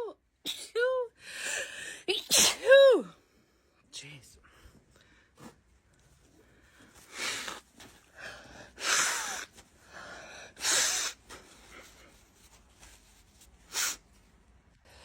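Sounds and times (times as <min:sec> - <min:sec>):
woman sneezing: 0:02.2 - 0:03.1.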